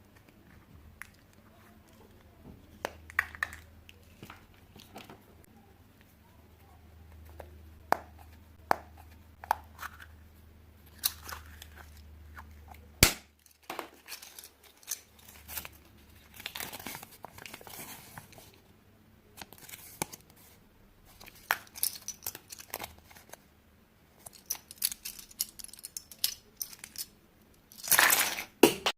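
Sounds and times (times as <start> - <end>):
wrapper crinkling and tearing: 13.4 - 18.2, 27.8 - 28.6.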